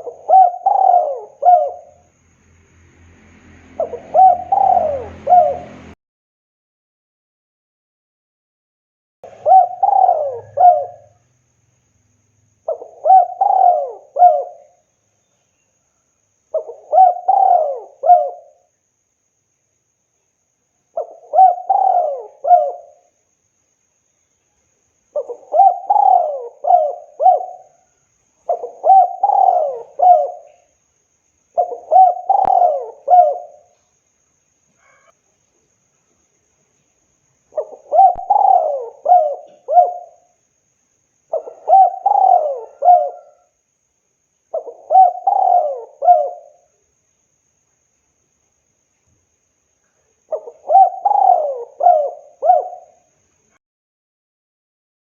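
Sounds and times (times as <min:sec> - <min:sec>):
dove cooing: 0:00.0 - 0:02.0, 0:03.8 - 0:06.0, 0:09.2 - 0:11.2, 0:12.7 - 0:14.8, 0:16.5 - 0:18.7, 0:21.0 - 0:23.0, 0:25.1 - 0:30.7, 0:31.6 - 0:33.8, 0:37.5 - 0:40.3, 0:41.3 - 0:43.6, 0:44.5 - 0:46.8, 0:50.3 - 0:53.1.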